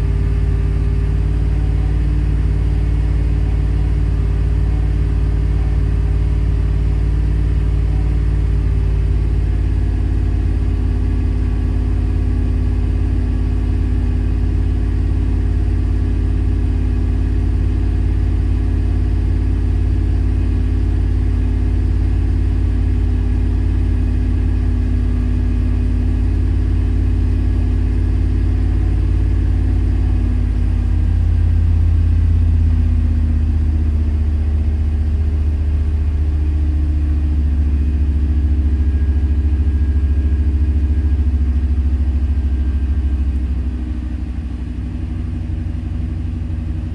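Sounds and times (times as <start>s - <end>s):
engine running rough with misfire: 0.0s - 46.9s.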